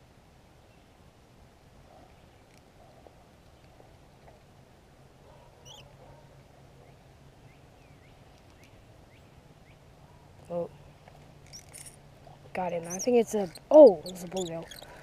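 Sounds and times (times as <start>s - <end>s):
faint high-pitched squeaks: 5.6s - 5.9s, 11.4s - 12.0s, 12.7s - 15.0s.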